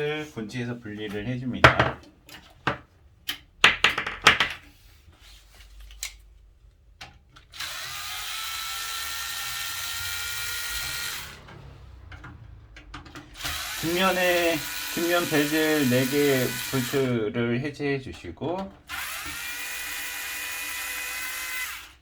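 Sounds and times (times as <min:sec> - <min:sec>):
clicks and knocks of handling parts: 0:01.6 - 0:04.7
electric screwdriver running: 0:07.6 - 0:11.4, 0:13.4 - 0:17.1, 0:18.9 - 0:22.0.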